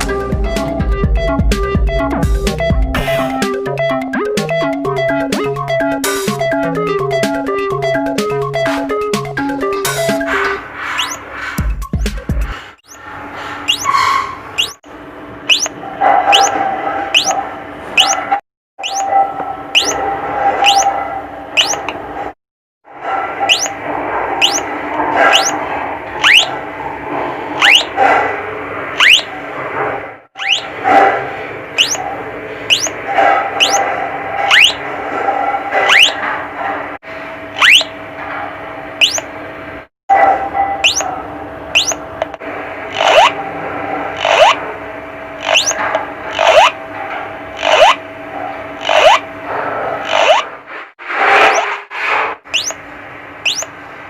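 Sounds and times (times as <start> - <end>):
electronic doorbell chirps: 13.7 - 13.9, 14.6 - 14.8, 15.5 - 15.7, 17.2 - 17.4, 18.0 - 18.2, 18.8 - 19.1, 19.8 - 20.0, 20.7 - 20.9, 21.6 - 21.8, 23.5 - 23.7, 24.4 - 24.6, 26.2 - 26.5, 29.0 - 29.3, 30.4 - 30.7, 31.8 - 32.0, 32.7 - 32.9, 37.6 - 37.9, 39.0 - 39.3, 40.8 - 41.1, 41.8 - 42.0, 45.4 - 45.8, 52.6 - 52.8, 53.4 - 53.7.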